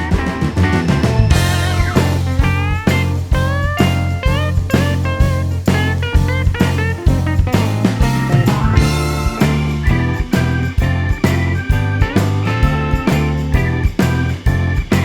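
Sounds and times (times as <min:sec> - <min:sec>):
electric guitar bending notes: 0:00.0 - 0:14.7
bass line: 0:00.0 - 0:15.0
blues band music: 0:00.0 - 0:15.0
drum beat: 0:00.0 - 0:15.0.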